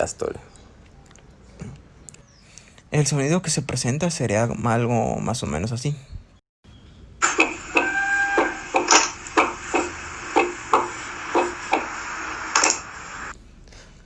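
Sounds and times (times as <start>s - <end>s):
steady hiss: 7.2s - 13.3s.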